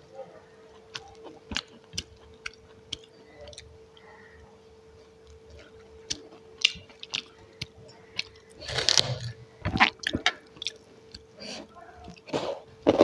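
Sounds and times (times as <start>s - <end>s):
chewing and crunching food: 0.0s - 13.0s
faint steady hum: 0.0s - 13.0s.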